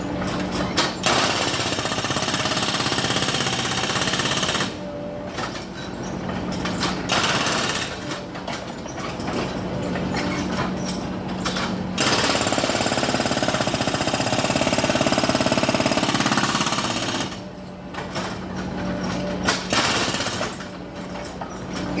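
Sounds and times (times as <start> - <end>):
jackhammer breaking concrete: 1.0 - 4.8, 7.1 - 8.0, 12.0 - 17.4, 19.6 - 20.6.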